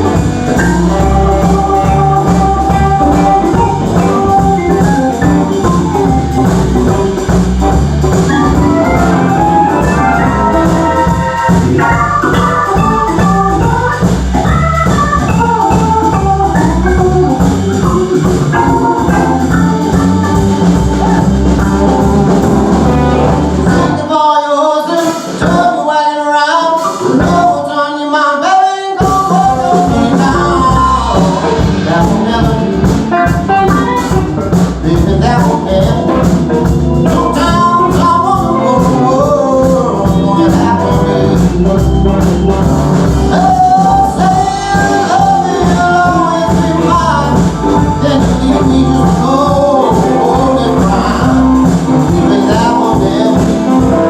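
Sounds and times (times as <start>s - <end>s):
live band jamming: 0.0s - 54.0s
wavering melodic line: 8.3s - 13.8s.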